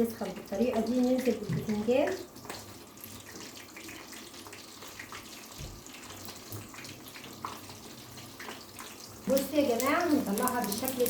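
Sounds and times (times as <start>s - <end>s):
sizzling in hot oil: 0.0s - 11.0s.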